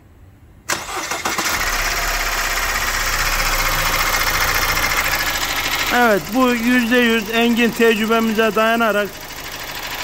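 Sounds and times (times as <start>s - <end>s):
diesel engine cranking and idling: 0.7s - 10.0s.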